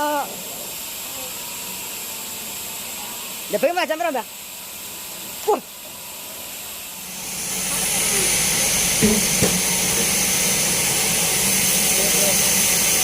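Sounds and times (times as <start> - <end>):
band saw cutting log: 7.0 - 13.0.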